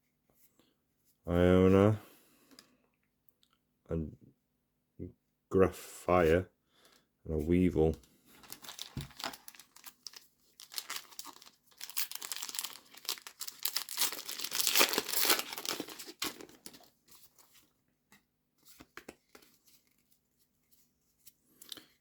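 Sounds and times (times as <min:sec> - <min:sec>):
cards being handled: 0:07.5 - 0:21.8
foil wrapper tearing and crinkling: 0:08.4 - 0:17.0.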